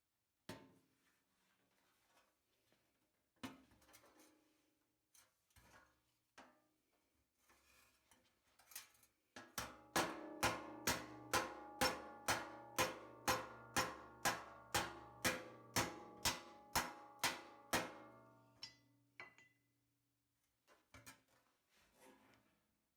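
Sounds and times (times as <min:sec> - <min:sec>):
hammer ringing on sheet steel: 0:09.9 - 0:18.8.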